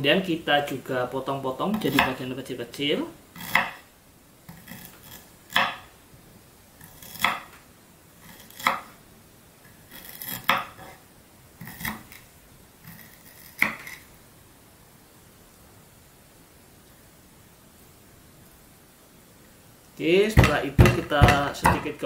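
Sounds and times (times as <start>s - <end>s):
knife chopping on board: 1.8s - 2.2s, 3.4s - 3.8s, 5.5s - 5.8s, 8.6s - 8.8s, 20.3s - 21.9s.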